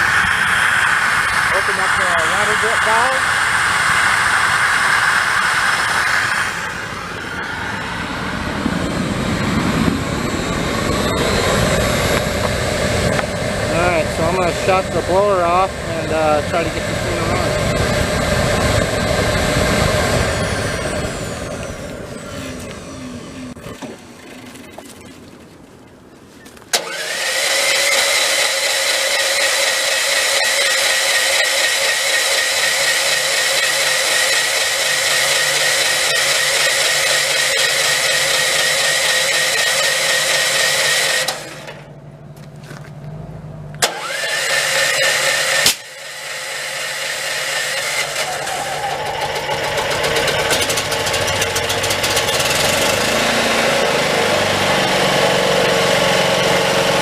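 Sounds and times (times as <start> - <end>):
generator engine running: 0.0 - 25.1, 26.7 - 57.0.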